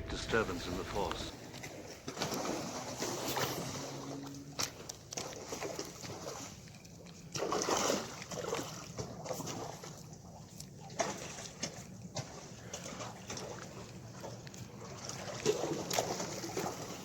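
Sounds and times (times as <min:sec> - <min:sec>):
water sloshing: 0:00.0 - 0:17.0
splash in water: 0:07.3 - 0:17.0.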